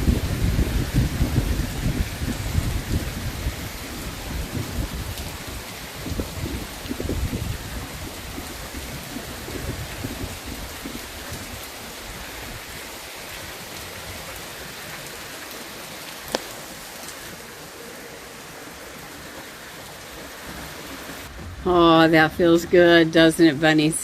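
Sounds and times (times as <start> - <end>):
low rumble of thunder: 0.0 - 12.7, 21.3 - 23.2
steady rain falling: 0.0 - 24.0.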